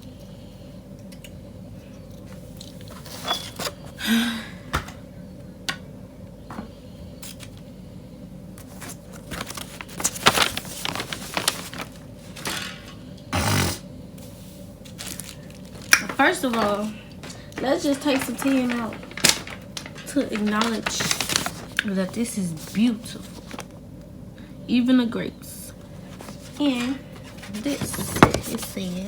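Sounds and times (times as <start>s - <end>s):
steady low hum: 0.0s - 29.0s
objects scraping and rustling: 2.2s - 4.0s, 8.6s - 13.0s, 14.2s - 23.8s, 25.8s - 29.0s.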